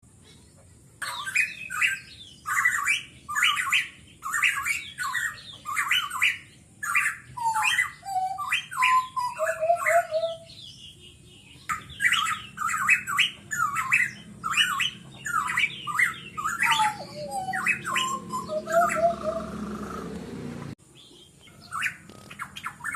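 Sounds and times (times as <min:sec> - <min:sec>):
bird harsh calls: 0:00.1 - 0:22.9
bird whistled notes: 0:01.0 - 0:10.9, 0:11.6 - 0:19.5.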